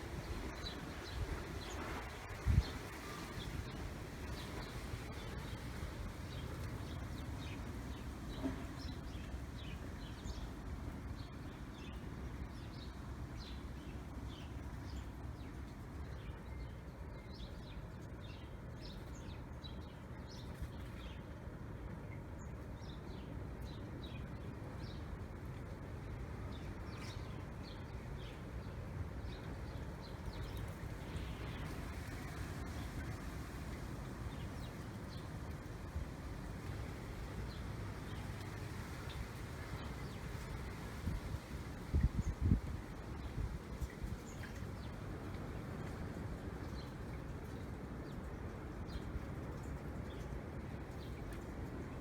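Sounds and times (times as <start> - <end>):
wind buffeting microphone: 0.0 - 7.8, 30.0 - 46.7.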